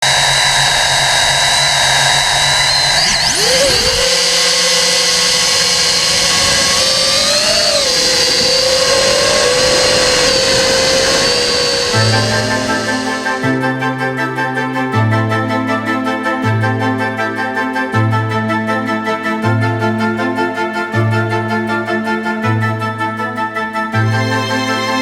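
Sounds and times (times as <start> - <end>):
drone motors whining: 0.0 - 13.8.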